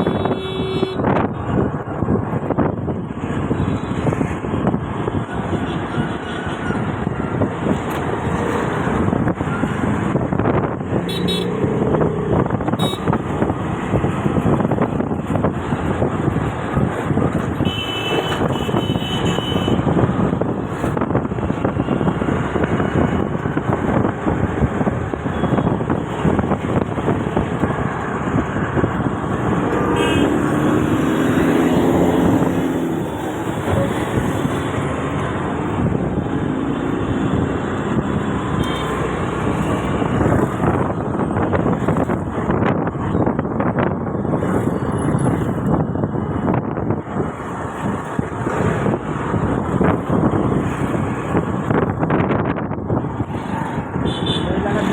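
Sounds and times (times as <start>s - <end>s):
vehicle rumble and rattle: 0.0s - 54.9s.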